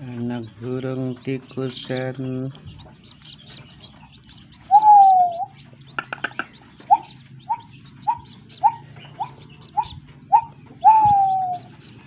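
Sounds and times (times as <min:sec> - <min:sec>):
chick whistled note: 0:10.8 - 0:11.6.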